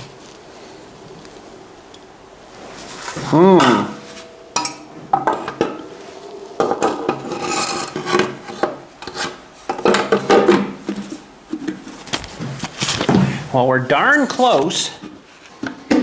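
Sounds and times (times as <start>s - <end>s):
faint metallic ringing: 0.0s - 10.6s
metal scraping and rubbing: 0.0s - 13.0s.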